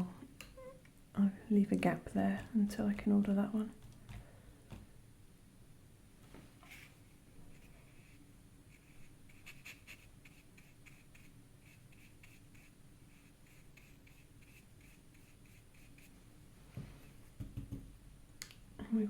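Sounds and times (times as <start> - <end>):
scratchy strokes on paper: 6.6 - 16.2.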